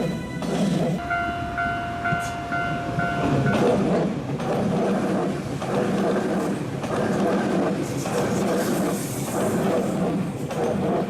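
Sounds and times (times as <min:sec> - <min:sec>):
short beeps: 0:00.0 - 0:03.8
held tone: 0:00.0 - 0:03.9
electric train rumbling on rails: 0:00.0 - 0:11.0.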